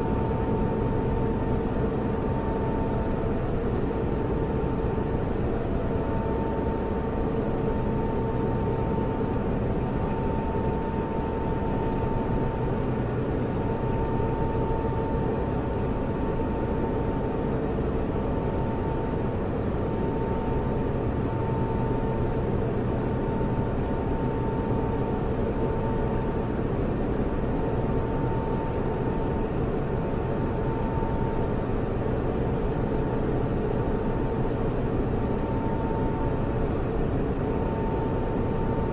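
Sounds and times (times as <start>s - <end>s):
constant hum: 0.0s - 38.9s
server cooling fans rushing: 0.0s - 38.9s.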